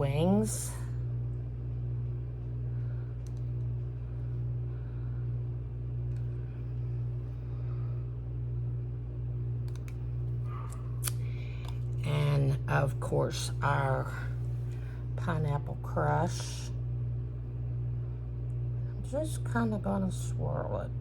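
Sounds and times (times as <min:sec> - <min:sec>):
low hum: 0:00.0 - 0:21.0.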